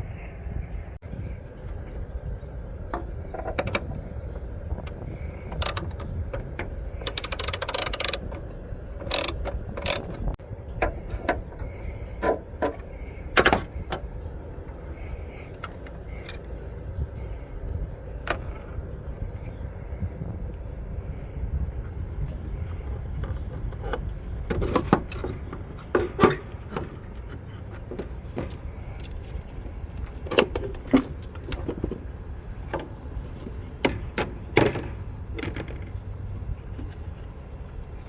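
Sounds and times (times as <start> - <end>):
socket ratchet clicking: 5.6 - 6.0, 7.1 - 8.2, 9.1 - 10.1.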